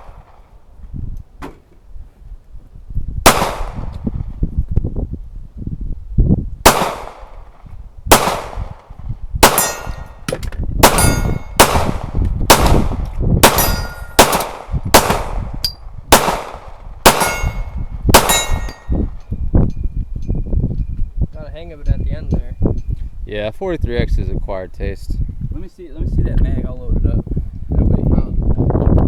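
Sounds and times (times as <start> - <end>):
pistol shots: 3.3 - 4.1, 6.6 - 19.1
steel targets ringing: 9.4 - 11.6, 13.4 - 14.3, 17.1 - 19.2.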